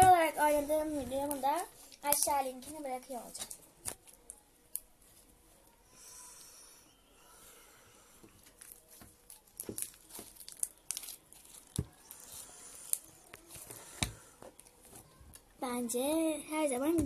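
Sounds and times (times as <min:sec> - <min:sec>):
sticky slime pops and crackles: 0:08.6 - 0:12.0.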